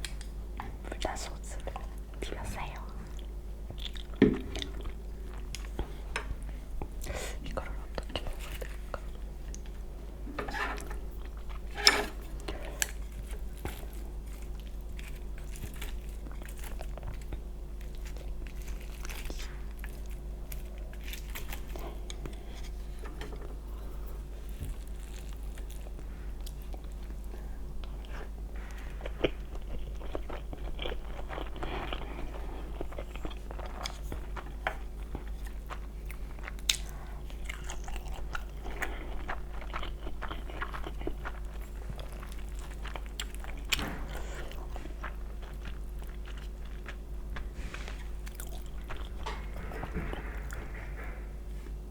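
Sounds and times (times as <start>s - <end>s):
steady low hum: 0.0s - 51.9s
person chewing and biting: 3.2s - 6.0s, 10.5s - 23.0s, 24.2s - 27.2s, 27.8s - 50.8s.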